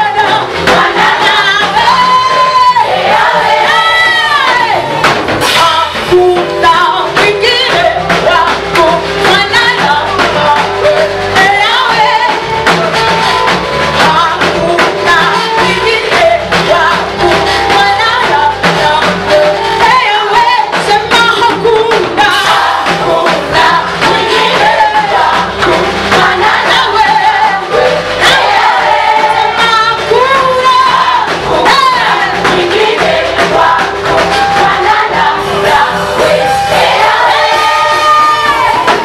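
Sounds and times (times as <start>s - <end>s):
gospel song over a band: 0.0s - 39.0s.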